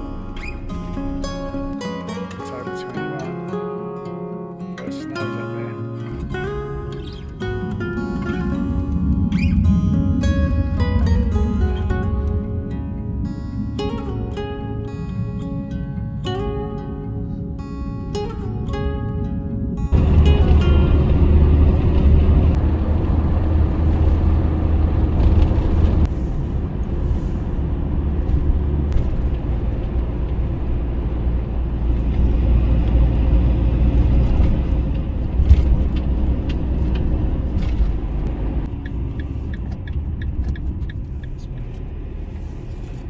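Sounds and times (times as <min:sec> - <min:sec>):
vehicle engine and road noise: 0:00.0 - 0:43.0.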